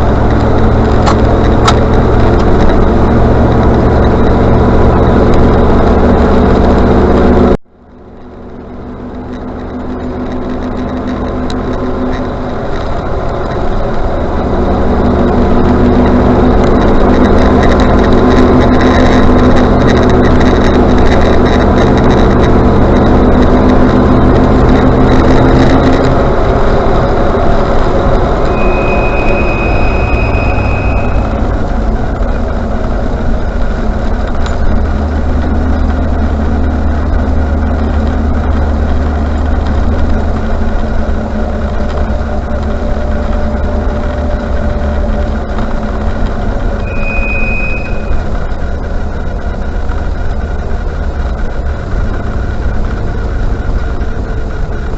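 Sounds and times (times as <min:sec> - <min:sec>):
car engine and road noise: 0:00.0 - 0:54.9
high-pitched brake squeal: 0:28.4 - 0:31.8, 0:46.8 - 0:48.5.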